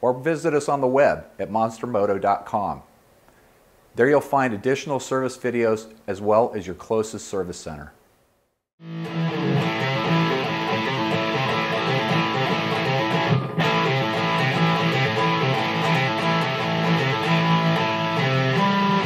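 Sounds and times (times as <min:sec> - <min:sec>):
strummed guitar chords: 0:08.8 - 0:19.0
bass line: 0:08.9 - 0:19.0.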